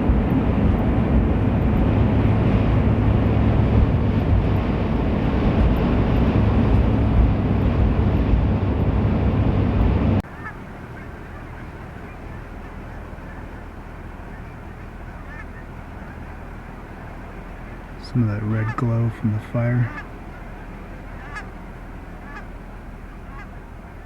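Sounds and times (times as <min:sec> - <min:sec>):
car road and wind noise: 0:00.0 - 0:24.0
faint geese honking: 0:10.2 - 0:24.0.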